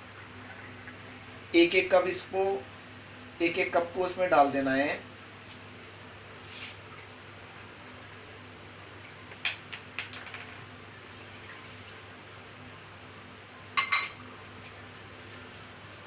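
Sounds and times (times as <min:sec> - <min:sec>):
cup clinking on metal pot: 0:13.8 - 0:14.2.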